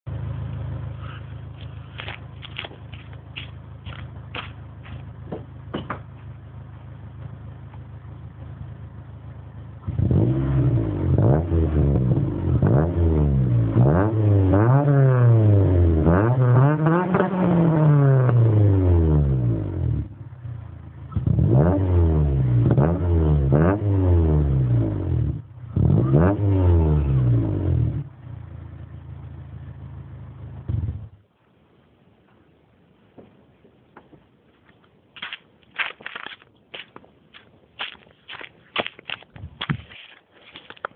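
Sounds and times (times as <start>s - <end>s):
car engine idling and revving: 0.1s - 31.3s.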